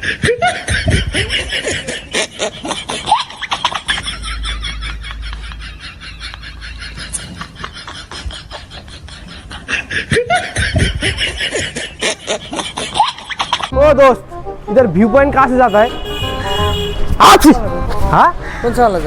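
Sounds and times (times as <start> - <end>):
snickering laughter: 0.0 - 13.7.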